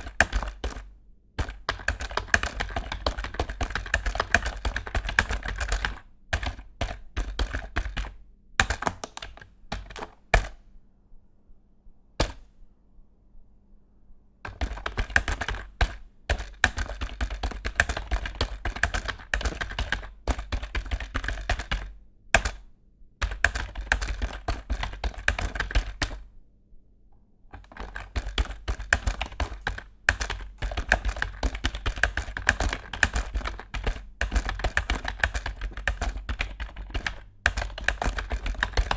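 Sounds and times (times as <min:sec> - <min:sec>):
keyboard keys clacking: 0:27.6 - 0:38.9.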